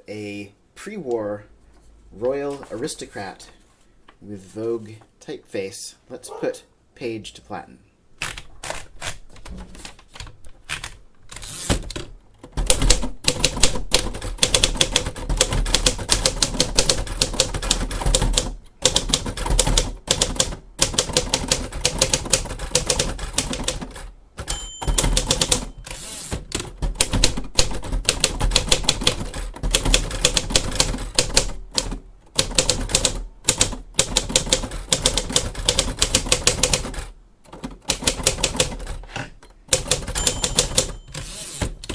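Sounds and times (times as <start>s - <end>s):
typewriter margin bell: 24.4s - 26.2s, 39.8s - 41.6s
typewriter key strikes: 24.4s - 31.5s, 39.7s - 41.9s.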